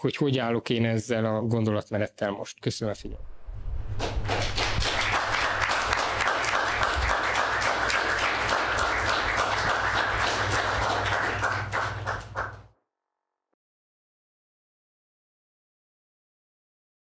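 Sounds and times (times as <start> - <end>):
audience applauding: 4.0 - 12.7.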